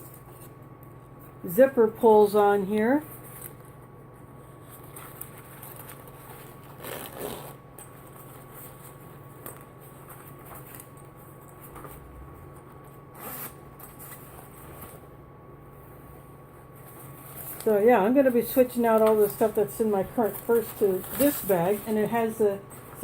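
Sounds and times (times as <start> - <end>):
bag material rustling and scraping: 4.5 - 11.0, 20.2 - 22.1
zipper: 6.6 - 7.6, 13.2 - 13.6.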